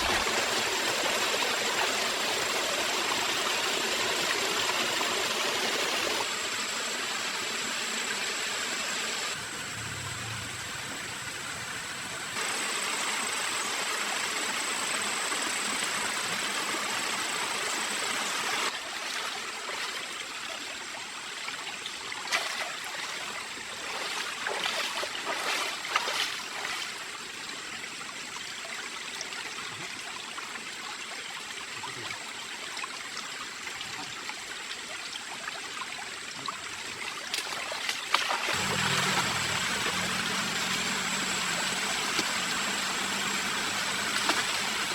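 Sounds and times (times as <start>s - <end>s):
stream water flowing: 0.0s - 44.9s.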